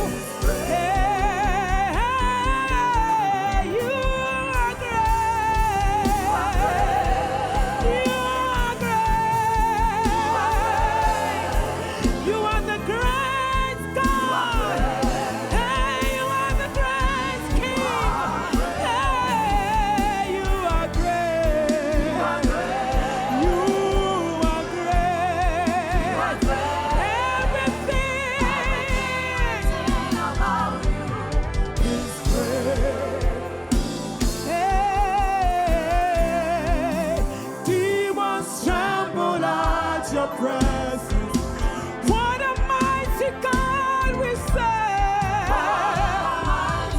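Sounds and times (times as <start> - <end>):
steady beat: 0.0 - 37.5
backing singers: 0.0 - 46.9
keyboard: 0.0 - 46.9
solo voice singing with vibrato: 0.0 - 46.9.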